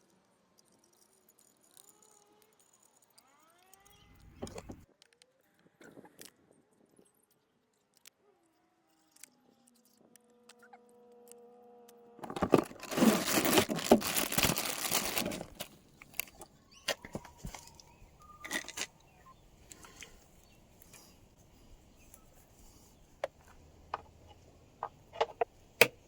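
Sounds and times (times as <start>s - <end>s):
plastic crinkling and rustling: 12.2s - 19.1s.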